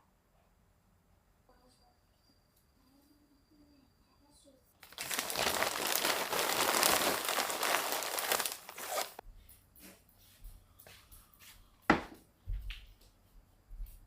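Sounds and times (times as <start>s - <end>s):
wrapping material crinkling: 4.8s - 9.2s.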